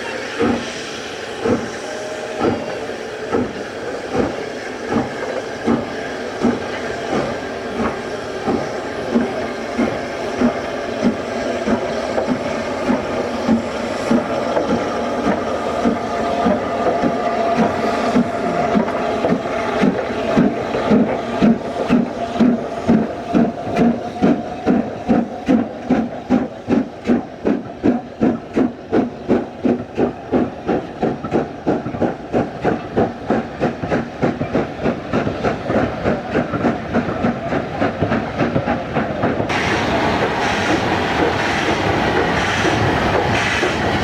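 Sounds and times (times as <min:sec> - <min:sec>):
steam hissing: 0:00.0 - 0:44.0
steam locomotive chuffing: 0:00.0 - 0:44.0.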